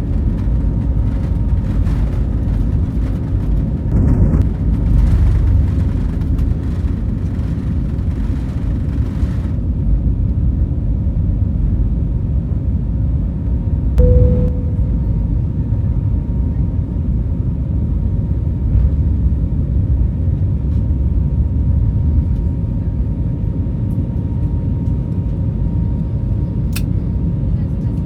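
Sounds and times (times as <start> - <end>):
airliner engine and airflow rumble: 0.0 - 28.0
faint steady whine: 14.0 - 16.2.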